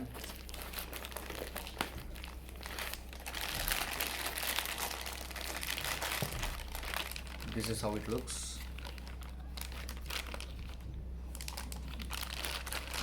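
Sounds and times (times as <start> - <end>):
packaging crinkling and rustling: 0.0 - 13.0
steady low hum: 0.0 - 13.0.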